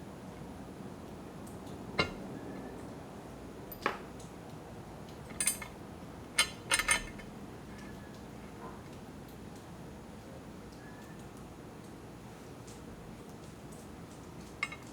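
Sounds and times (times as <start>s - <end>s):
short sharp clinks and knocks: 2.0s - 2.2s.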